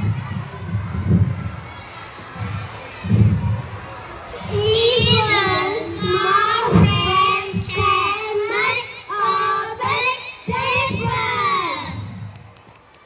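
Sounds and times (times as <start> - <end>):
child singing: 4.5 - 12.1.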